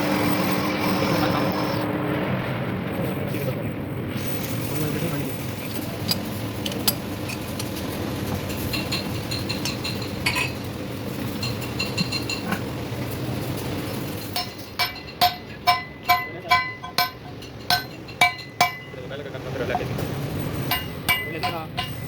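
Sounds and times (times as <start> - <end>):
workshop background noise: 0.0 - 1.9, 2.8 - 22.0
light metal clinks: 5.5 - 7.8, 11.4 - 12.7, 20.6 - 22.0
hammer striking steel: 14.2 - 19.0, 20.6 - 22.0.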